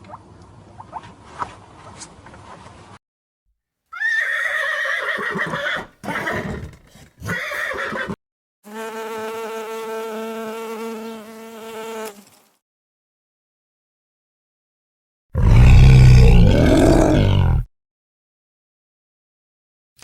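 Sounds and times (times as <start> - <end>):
horse neighing: 3.9 - 8.2.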